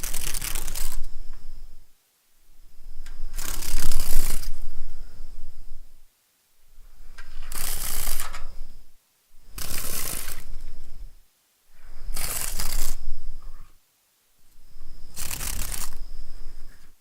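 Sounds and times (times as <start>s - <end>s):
dragonfly wings buzzing: 0.0s - 1.8s, 2.6s - 5.9s, 6.8s - 11.1s, 11.8s - 13.6s, 14.5s - 16.9s.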